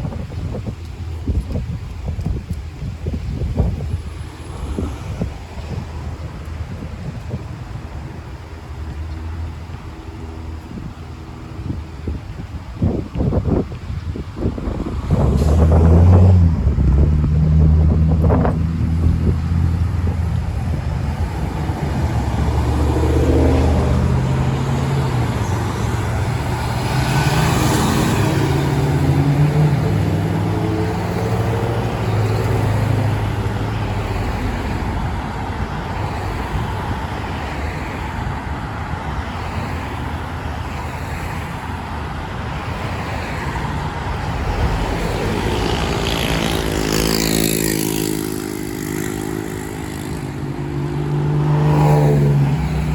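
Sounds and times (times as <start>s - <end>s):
road traffic: 0.0s - 52.9s
vehicle passing close: 3.0s - 52.9s
heavy diesel engine running: 14.0s - 35.9s.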